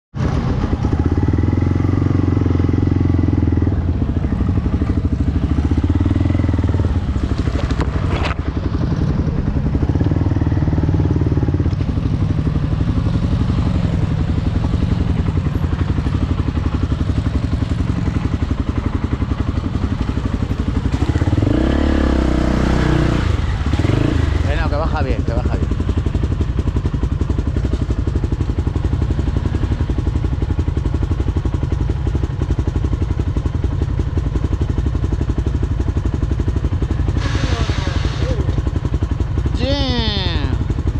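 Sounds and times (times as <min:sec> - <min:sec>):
vehicle engine revving: 0:00.2 - 0:25.6.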